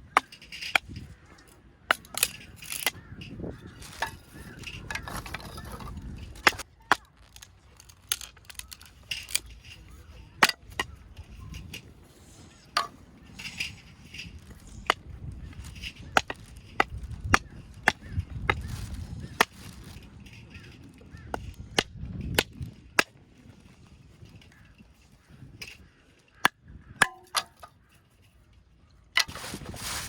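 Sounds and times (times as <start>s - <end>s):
axe chopping firewood: 27.0s - 27.7s.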